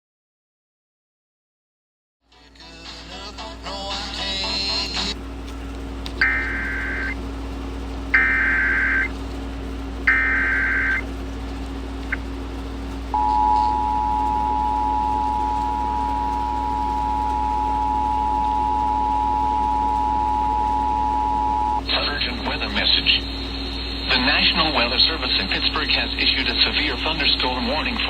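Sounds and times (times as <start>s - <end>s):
screeching digital bursts: 6.2s - 7.2s, 8.2s - 9.1s, 10.1s - 11.0s
two-tone alert signal: 6.2s - 7.2s, 8.2s - 9.1s, 10.1s - 11.0s, 13.2s - 21.8s.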